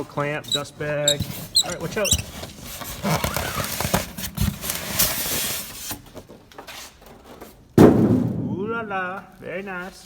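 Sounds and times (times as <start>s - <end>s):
cardboard and plastic packaging rustling: 0.2s - 7.7s.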